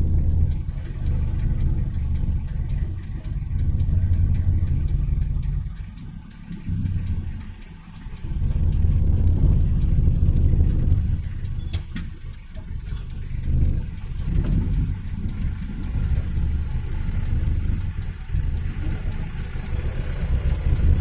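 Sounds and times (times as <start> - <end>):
vehicle rumble on rough road: 0.0 - 21.0
sharp click: 11.4 - 13.3.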